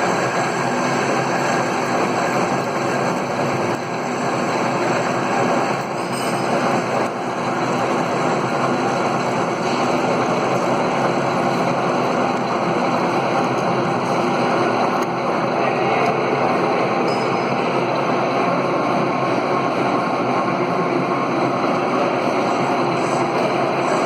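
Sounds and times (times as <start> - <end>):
lathe machine running: 0.0 - 24.0.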